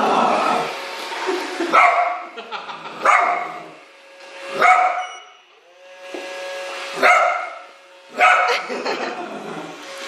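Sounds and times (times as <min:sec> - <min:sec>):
dog barking: 0:01.8 - 0:02.2, 0:03.0 - 0:03.6, 0:04.6 - 0:05.2, 0:07.0 - 0:07.6, 0:08.2 - 0:08.6
robot vacuum motor hum: 0:05.4 - 0:10.0.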